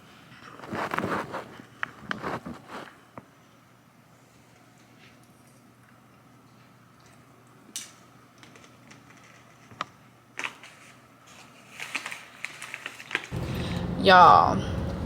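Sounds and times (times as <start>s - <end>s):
steady low rumble: 13.4s - 15.0s.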